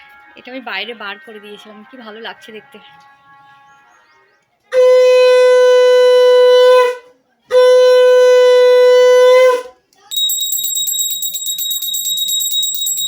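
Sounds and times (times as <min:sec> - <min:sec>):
hand bell ringing rapidly: 0:10.1 - 0:13.0.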